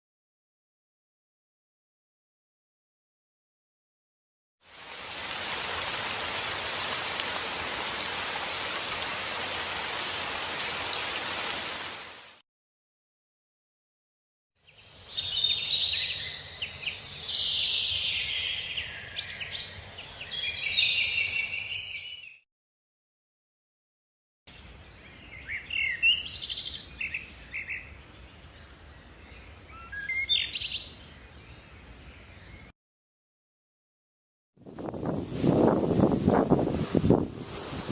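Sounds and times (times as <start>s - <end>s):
rain hiss with drop ticks: 4.7s - 12.4s
birds chirping and singing: 14.6s - 22.4s, 24.6s - 32.7s.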